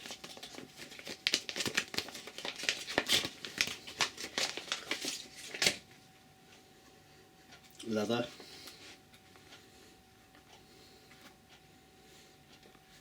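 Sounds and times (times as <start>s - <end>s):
wrapping crinkling: 0.0s - 5.8s.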